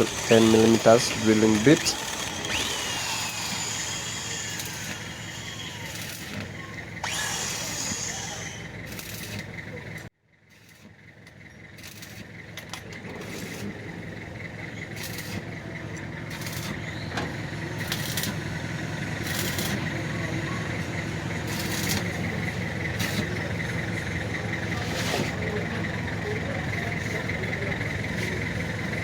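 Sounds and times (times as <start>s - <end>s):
electric drill running: 0.0s - 9.1s.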